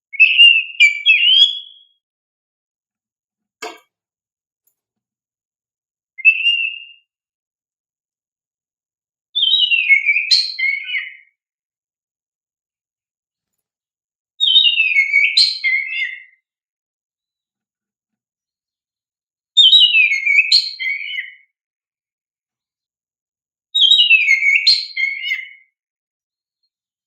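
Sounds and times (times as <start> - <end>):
bird singing whistled song: 0.1 - 2.0, 6.2 - 7.1, 9.4 - 11.4, 14.4 - 16.4, 19.6 - 21.5, 23.8 - 25.8.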